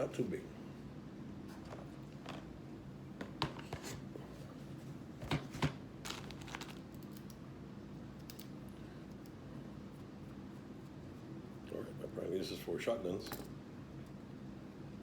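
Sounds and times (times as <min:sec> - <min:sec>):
packaging rustling and crinkling: 0:06.0 - 0:06.9
steady low hum: 0:06.8 - 0:15.0.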